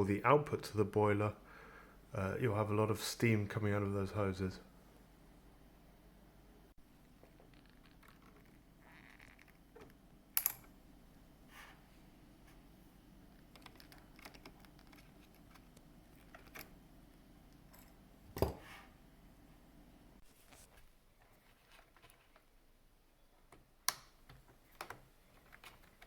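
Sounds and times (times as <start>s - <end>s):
plastic parts clicking and knocking: 13.4s - 16.8s, 23.4s - 26.0s.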